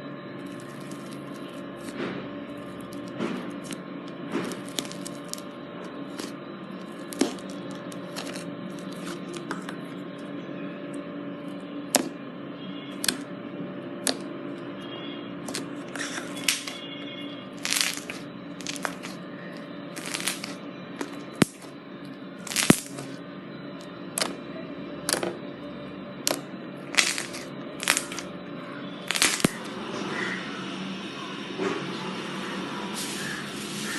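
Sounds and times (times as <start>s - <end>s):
low steady hum: 0.0s - 33.9s
slime clicking and popping: 17.6s - 19.2s, 20.0s - 20.6s, 22.5s - 23.0s, 27.0s - 28.3s, 29.1s - 29.6s.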